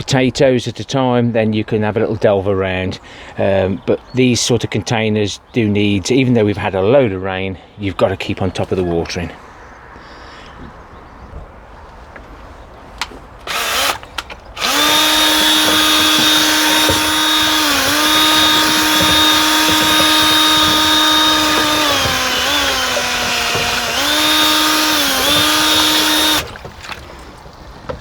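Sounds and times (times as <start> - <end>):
power tool motor whine: 13.4 - 26.6.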